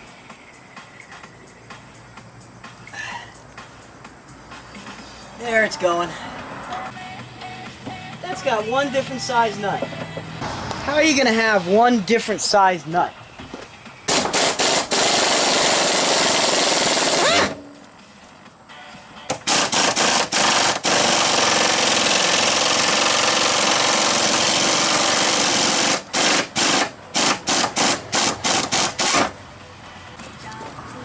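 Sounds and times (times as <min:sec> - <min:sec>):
impact wrench hammering: 0:19.3 - 0:29.3.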